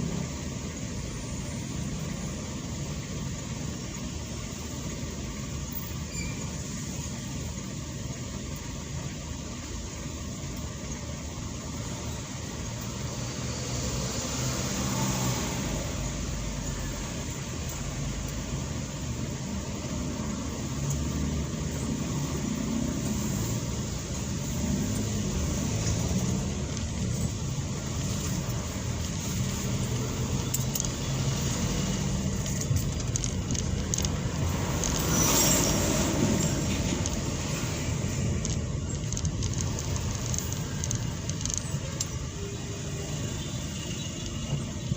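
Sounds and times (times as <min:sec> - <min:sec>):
road traffic rumble: 0:00.0 - 0:44.9.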